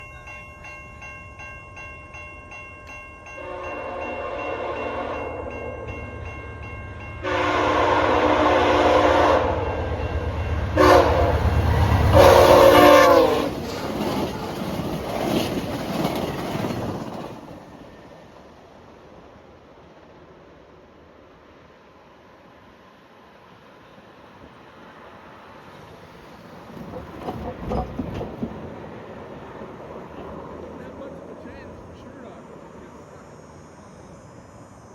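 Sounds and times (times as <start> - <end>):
crossing bells ringing: 0.0 - 13.3
train rumbling past: 0.0 - 34.9
train air horn: 3.4 - 5.5, 7.2 - 9.8, 10.7 - 13.6.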